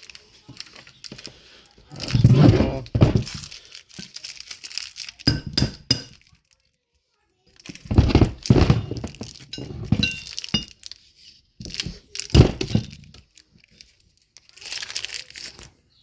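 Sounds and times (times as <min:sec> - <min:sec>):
metal parts knocking and clinking: 0:01.9 - 0:04.1, 0:05.2 - 0:06.3, 0:07.7 - 0:10.8, 0:11.6 - 0:13.2.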